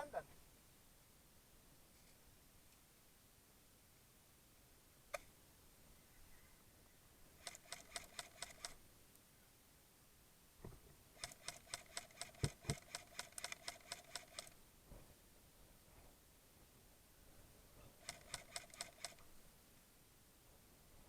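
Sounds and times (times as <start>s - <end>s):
airsoft gun firing: 11.2s - 14.5s.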